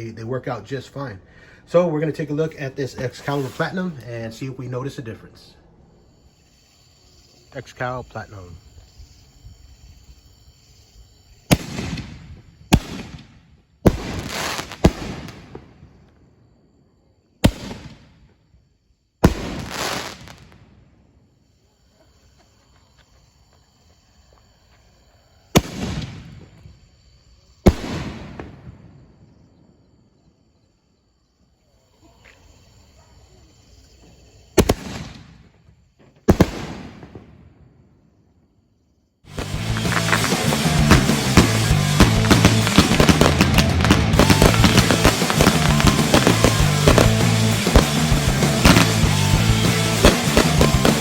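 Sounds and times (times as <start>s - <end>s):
crickets chirping: 0.0s - 51.0s
firework shells booming: 11.1s - 16.2s, 17.4s - 18.4s, 19.2s - 20.9s, 25.5s - 26.9s, 27.6s - 29.4s, 34.6s - 37.8s, 39.3s - 51.0s.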